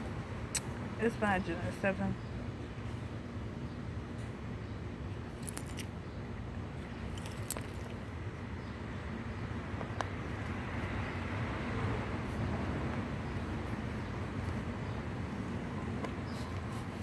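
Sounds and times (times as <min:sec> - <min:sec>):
low rumbling background noise: 0:00.0 - 0:17.0.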